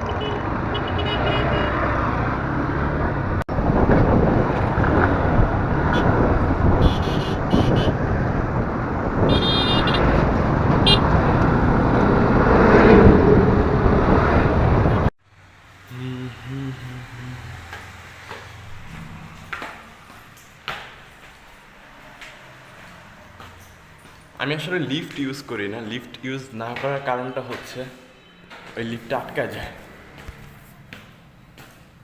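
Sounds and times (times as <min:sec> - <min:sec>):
car horn toots: 0:00.0 - 0:01.9, 0:06.8 - 0:08.0, 0:09.3 - 0:10.2, 0:10.8 - 0:11.1
road traffic passing: 0:00.0 - 0:32.0.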